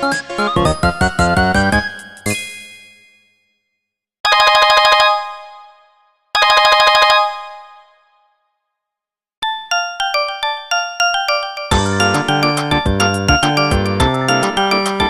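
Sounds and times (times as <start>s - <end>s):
ringtone tune of quick notes: 9.4s - 15.0s.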